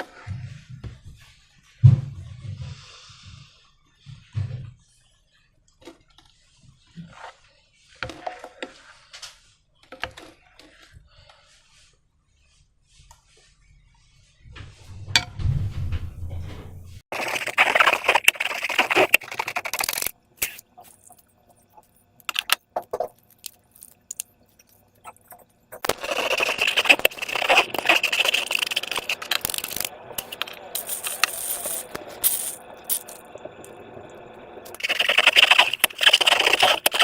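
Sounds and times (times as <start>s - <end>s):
low rumble: 14.5s - 17.0s
sticky slime crackling and scraping: 17.1s - 33.2s, 34.7s - 37.0s.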